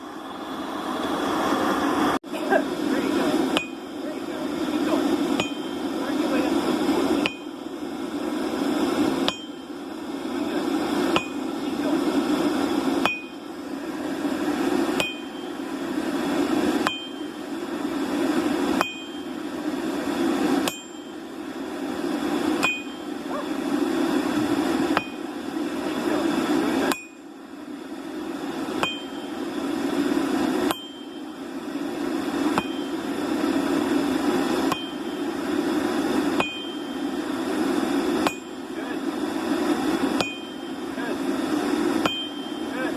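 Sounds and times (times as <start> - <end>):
steady rushing noise: 0.0 - 42.9
hammer striking hot metal: 2.4 - 7.6, 9.2 - 9.8, 10.6 - 11.5, 13.0 - 13.4, 14.9 - 16.0, 16.7 - 17.4, 18.7 - 19.4, 20.6 - 21.2, 22.6 - 23.5, 24.9 - 25.4, 26.8 - 27.3, 28.7 - 29.4, 30.6 - 31.4, 32.5 - 33.1, 34.6 - 35.4, 36.2 - 37.1, 38.1 - 38.6, 40.0 - 41.0, 41.8 - 42.9.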